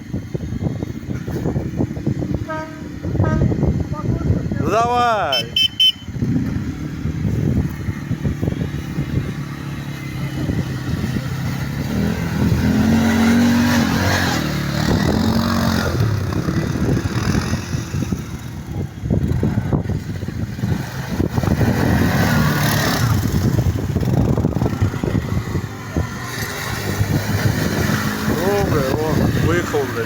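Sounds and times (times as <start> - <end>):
quad bike engine revving hard: 6.1 - 30.0.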